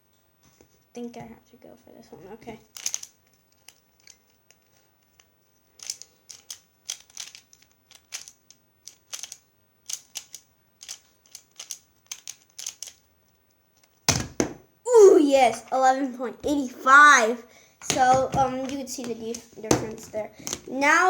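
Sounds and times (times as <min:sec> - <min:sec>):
plastic puzzle clicking and clacking: 0:02.6 - 0:13.1, 0:17.8 - 0:21.0.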